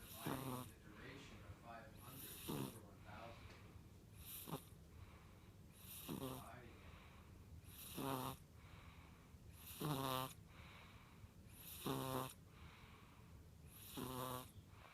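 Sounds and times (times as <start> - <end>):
baby snoring: 0.0 - 0.8, 2.0 - 3.3, 4.2 - 4.8, 5.8 - 6.6, 7.6 - 8.4, 9.5 - 10.4, 11.5 - 12.4, 13.7 - 14.9
quiet breathing: 0.0 - 14.9.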